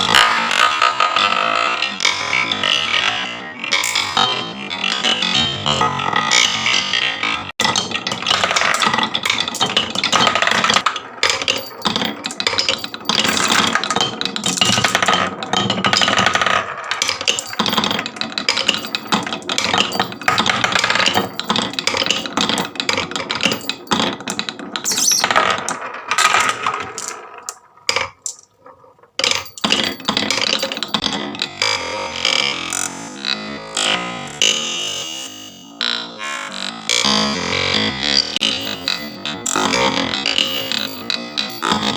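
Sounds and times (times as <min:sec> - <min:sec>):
marbles clattering down a run: 0:07.6 - 0:31.6, 0:38.4 - 0:41.9.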